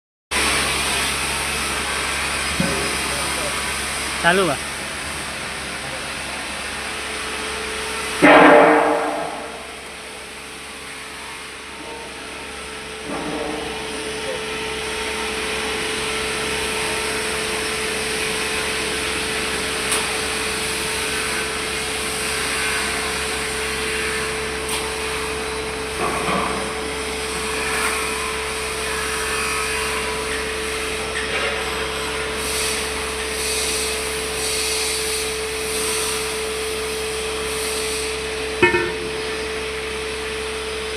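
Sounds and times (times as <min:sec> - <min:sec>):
machine humming and hissing: 0:00.4 - 0:28.4.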